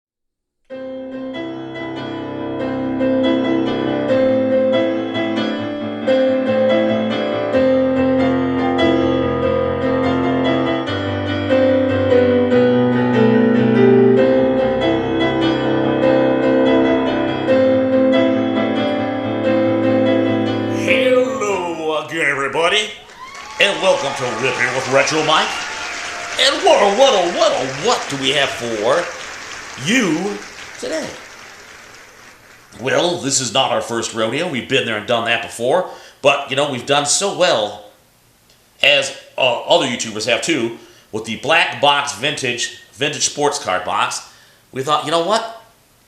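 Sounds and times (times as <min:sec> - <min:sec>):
keyboard playing repeating chords: 0:00.7 - 0:22.2, 0:26.4 - 0:33.3.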